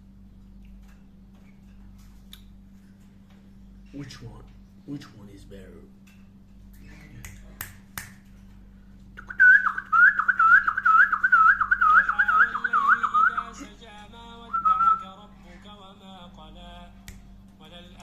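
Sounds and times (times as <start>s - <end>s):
loud warbling whistle: 9.2s - 13.6s.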